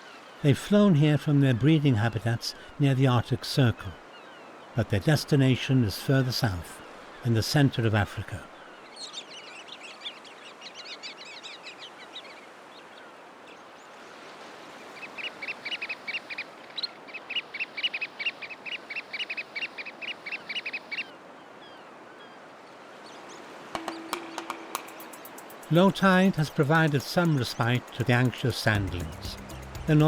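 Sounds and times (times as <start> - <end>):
shorebirds calling: 6.4 - 30.0
surf hissing: 23.3 - 30.0.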